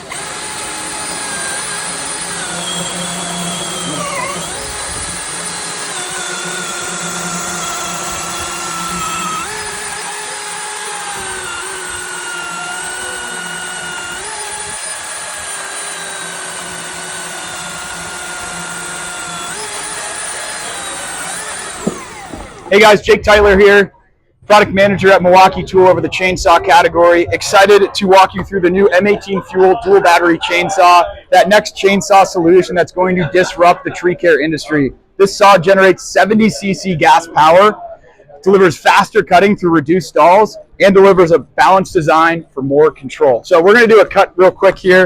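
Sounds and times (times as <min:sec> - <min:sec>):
electric chainsaw whining: 0:00.0 - 0:22.8.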